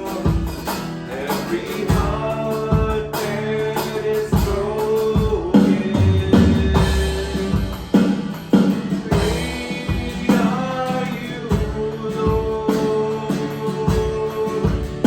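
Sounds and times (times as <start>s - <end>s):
drum kit: 0.0s - 15.0s
guitar: 0.0s - 15.0s
person singing: 0.0s - 15.0s.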